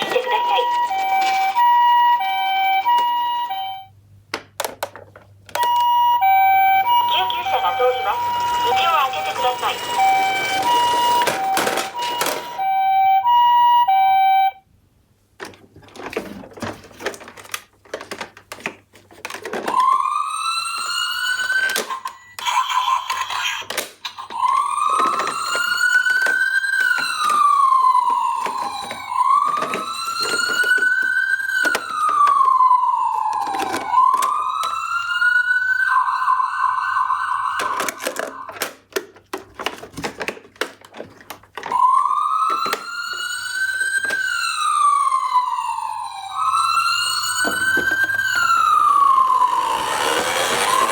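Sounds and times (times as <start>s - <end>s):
toy two-tone siren: 0.0s - 3.9s, 5.5s - 14.6s, 19.6s - 38.6s, 41.6s - 50.9s
toy wailing siren: 0.0s - 3.9s, 5.5s - 14.6s, 19.6s - 38.7s, 41.6s - 50.9s
plastic toy clicks and knocks: 4.3s - 5.7s, 37.6s - 41.8s.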